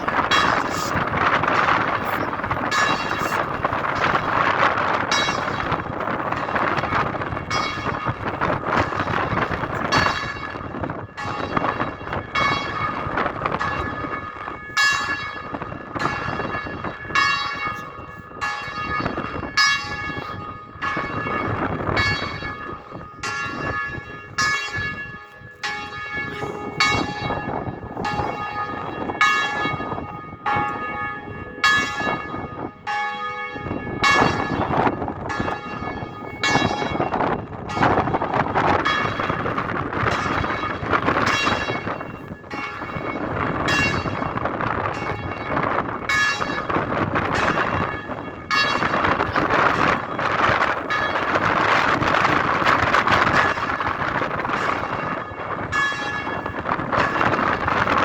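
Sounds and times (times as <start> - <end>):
church bells ringing: 0.0 - 58.0
wind noise: 0.0 - 58.0.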